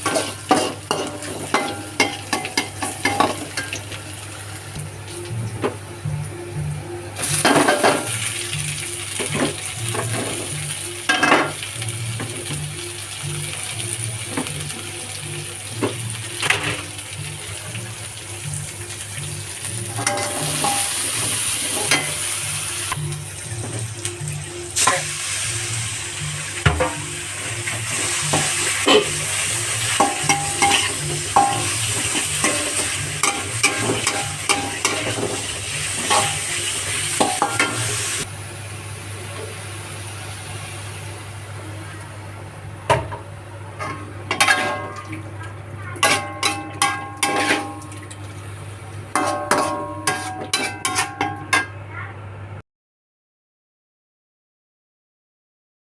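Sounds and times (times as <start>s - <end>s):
chicken sizzling in a pan: 0.0s - 4.8s, 7.2s - 42.5s.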